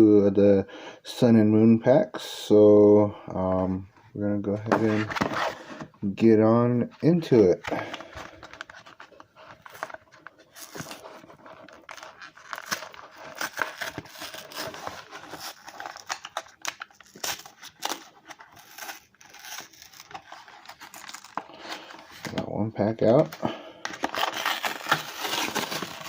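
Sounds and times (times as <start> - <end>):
packaging crinkling: 7.7 - 22.4, 23.2 - 26.0
packaging ripping: 9.6 - 22.4, 23.8 - 26.0.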